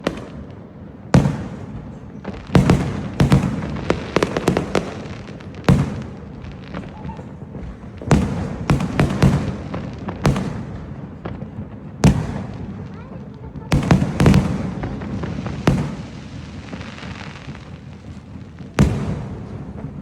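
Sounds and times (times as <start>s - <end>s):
fireworks bangs echoing: 0.0s - 20.0s.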